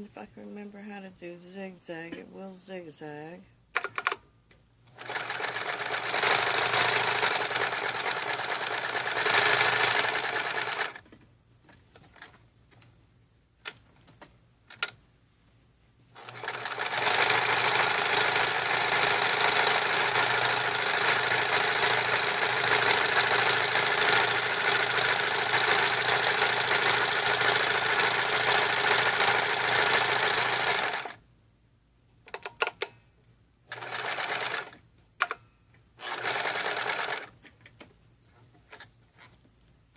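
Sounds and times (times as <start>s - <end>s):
sewing machine stitching: 4.9s - 11.0s, 16.2s - 31.2s, 33.7s - 34.8s, 36.0s - 37.4s.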